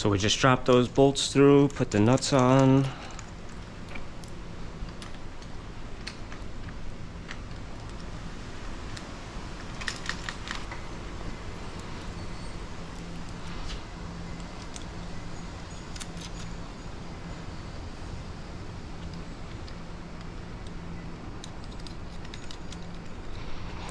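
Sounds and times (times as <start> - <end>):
steady low hum: 0.0 - 23.9
metallic clicks of bolts and nuts: 0.6 - 8.2, 8.8 - 11.0, 14.3 - 16.6, 18.9 - 23.4.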